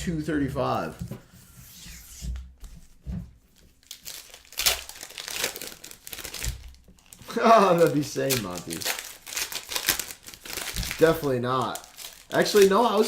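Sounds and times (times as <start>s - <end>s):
plastic wrappers crinkling and tearing: 3.6s - 13.0s.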